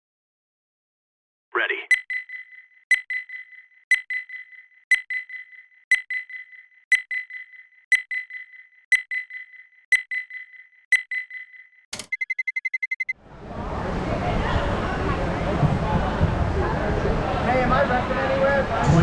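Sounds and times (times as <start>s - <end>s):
electronic timer beeping: 1.9s - 13.2s.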